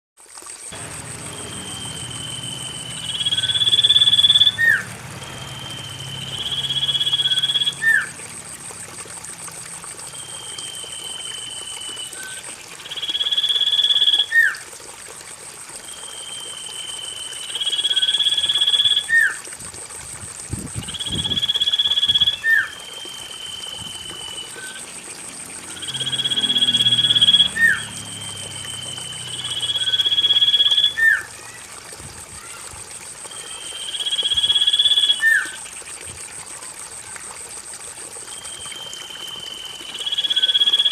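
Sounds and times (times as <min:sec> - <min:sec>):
thin high whine: 0:00.8 - 0:08.2
bird whistling song: 0:01.0 - 0:08.1, 0:10.1 - 0:14.6, 0:15.9 - 0:19.4, 0:20.9 - 0:24.8, 0:25.7 - 0:31.3, 0:33.3 - 0:35.6, 0:38.3 - 0:40.9.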